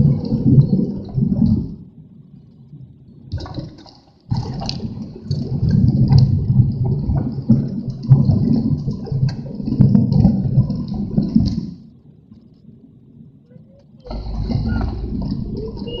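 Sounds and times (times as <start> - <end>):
wind buffeting microphone: 0.0 - 2.3, 4.3 - 11.8, 13.1 - 16.0.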